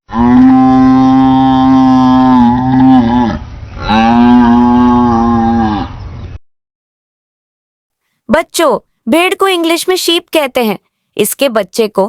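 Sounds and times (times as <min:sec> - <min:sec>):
buffalo mooing: 0:00.1 - 0:06.0.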